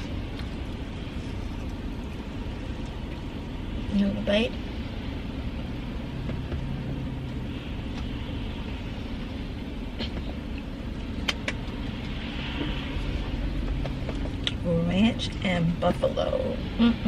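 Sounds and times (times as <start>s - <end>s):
chewing and handling food: 0.0s - 2.2s
steady low hum: 0.0s - 17.0s.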